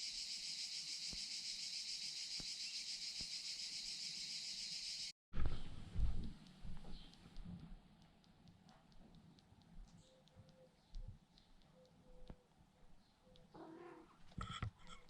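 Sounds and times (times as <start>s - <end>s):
cicadas buzzing: 0.0s - 5.1s.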